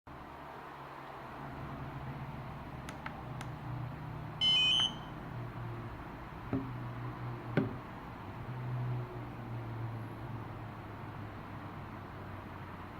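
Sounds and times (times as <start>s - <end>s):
electronic beep: 4.4s - 5.1s.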